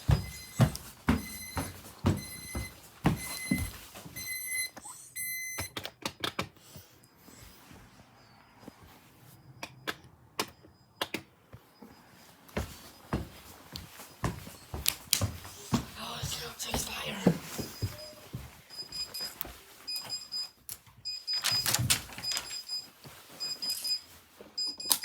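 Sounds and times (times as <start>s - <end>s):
electronic alarm beeping: 0.0s - 5.8s, 17.6s - 25.0s.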